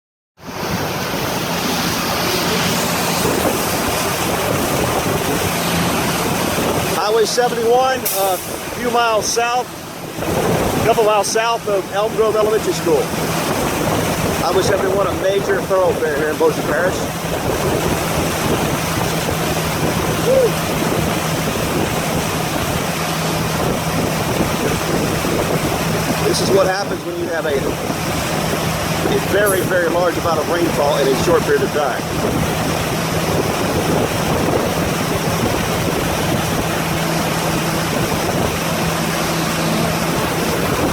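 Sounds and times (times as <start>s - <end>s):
low engine hum: 0.4s - 40.9s
water rushing: 0.4s - 40.9s
wind noise on microphone: 0.4s - 40.9s.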